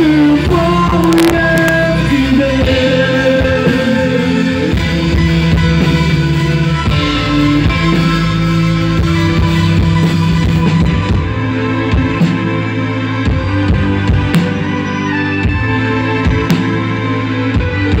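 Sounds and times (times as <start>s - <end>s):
live rock band playing: 0.0s - 18.0s
steady drum beat: 0.0s - 18.0s.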